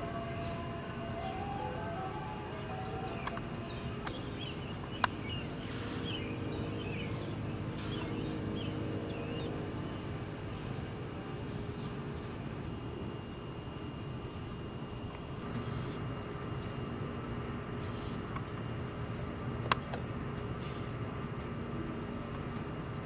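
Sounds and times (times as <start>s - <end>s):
birds chirping: 0.0s - 13.6s
steady background noise: 0.0s - 23.0s.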